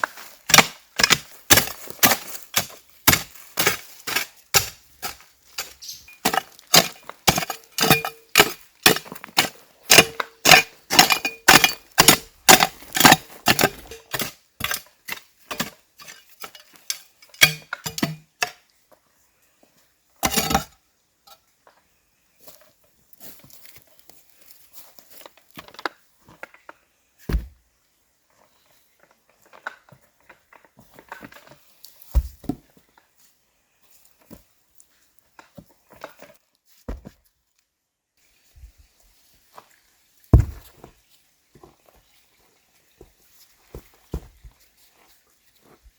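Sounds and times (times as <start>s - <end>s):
blade chopping wood: 0.5s - 14.8s, 17.4s - 18.6s, 32.1s - 32.6s, 40.4s - 40.7s
wood being handled: 40.4s - 40.9s.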